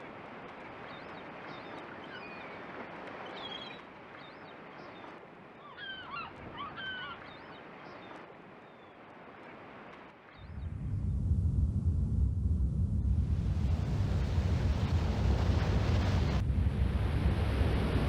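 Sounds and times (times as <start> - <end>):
birds calling: 0.9 - 9.0
rushing wash of noise: 10.6 - 18.0.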